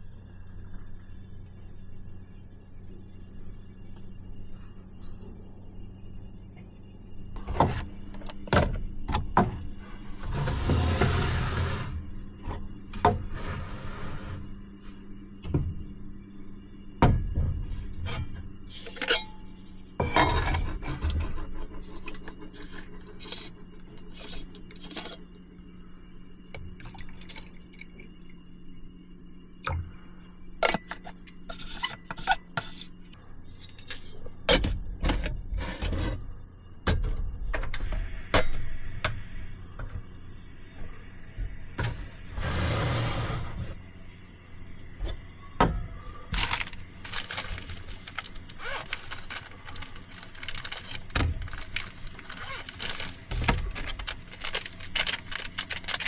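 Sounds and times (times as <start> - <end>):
steady low hum: 0.0 - 56.0
objects clinking and knocking: 44.9 - 56.0.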